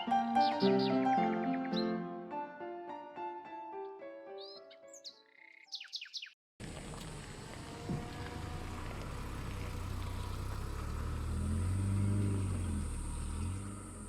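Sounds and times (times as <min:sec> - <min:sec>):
vehicle engine rumbling: 0:06.6 - 0:14.0.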